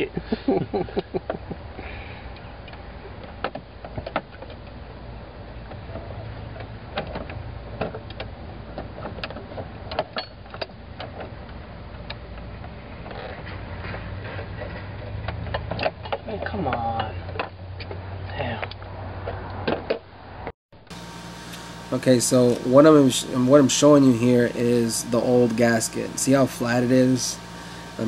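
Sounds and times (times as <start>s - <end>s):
steady low hum: 0.0s - 19.1s, 20.0s - 28.0s
hand tools and metal parts clicking: 5.9s - 19.7s.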